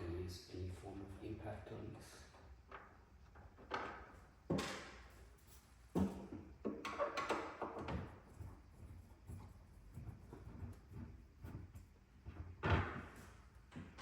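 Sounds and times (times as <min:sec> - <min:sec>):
knocks and clunks on wood: 0:02.4 - 0:05.2, 0:05.9 - 0:14.0.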